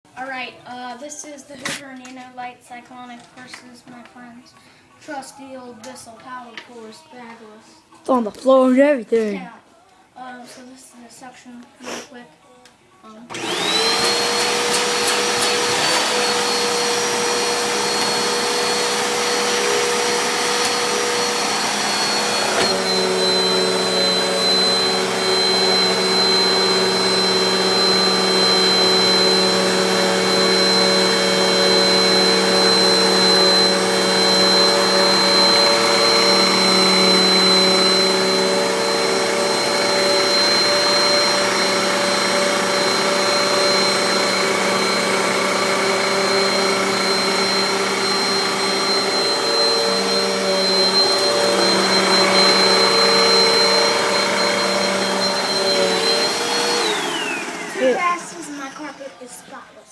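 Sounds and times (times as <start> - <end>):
vacuum cleaner motor whine: 13.3 - 59.9.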